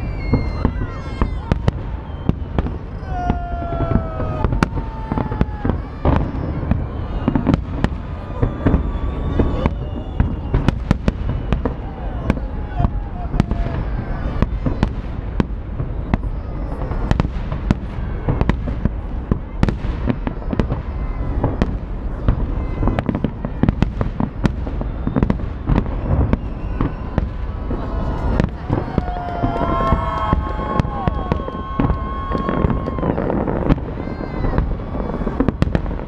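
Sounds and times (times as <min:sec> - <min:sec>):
whistle-like tones: 0:00.0 - 0:12.2, 0:24.7 - 0:27.3
fireworks bangs and crackling: 0:00.0 - 0:36.0.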